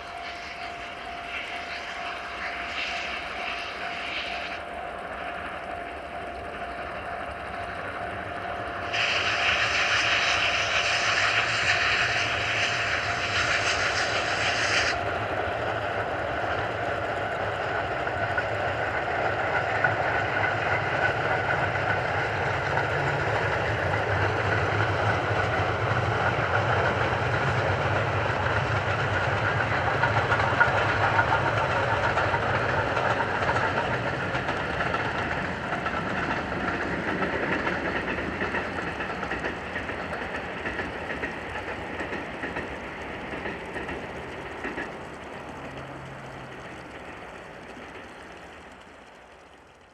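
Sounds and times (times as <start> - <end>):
steam train rail rumble: 0.0 - 49.9
sharp hiss: 8.8 - 15.0.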